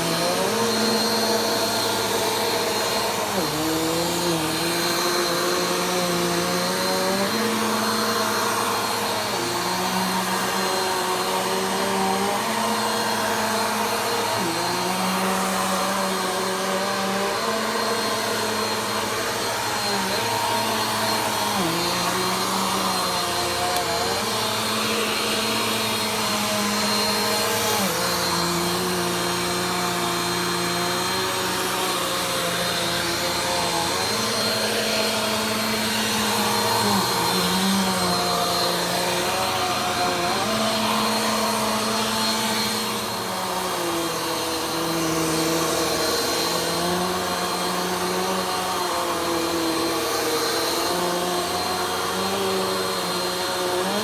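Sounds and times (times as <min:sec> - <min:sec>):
vacuum cleaner running: 0:00.0 - 0:54.0.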